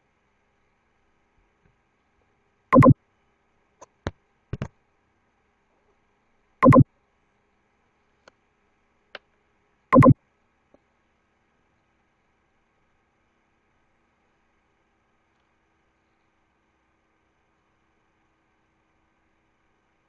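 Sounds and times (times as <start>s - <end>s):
short buzzy tones: 2.8s - 3.0s, 6.6s - 6.8s, 10.0s - 10.2s.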